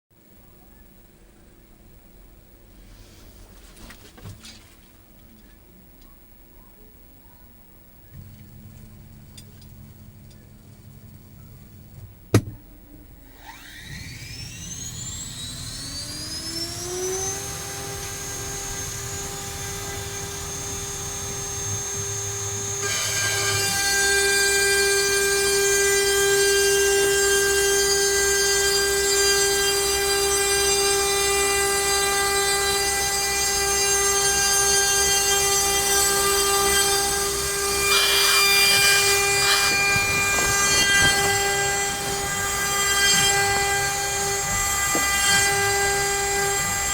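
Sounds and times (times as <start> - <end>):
router spindle whining: 13.2 - 46.9
router bit cutting wood hiss: 13.3 - 46.9.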